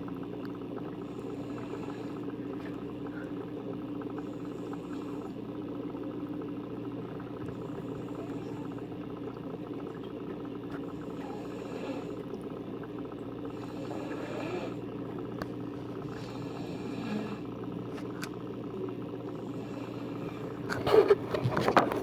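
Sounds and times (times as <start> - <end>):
low hum: 0.0 - 22.0
person snoring: 16.2 - 17.5.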